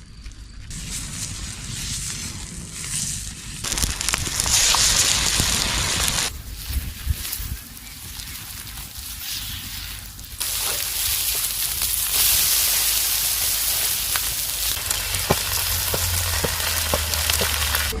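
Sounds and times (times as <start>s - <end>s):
meat sizzling in hot fat: 3.5s - 18.0s
fat popping: 3.6s - 6.3s, 14.1s - 18.0s.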